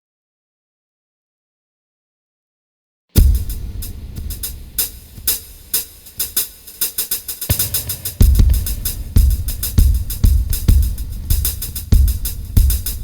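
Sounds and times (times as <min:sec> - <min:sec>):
bass drum kicks: 0:03.2 - 0:06.2, 0:07.5 - 0:13.0
hi-hat and cymbal strokes: 0:03.2 - 0:13.0.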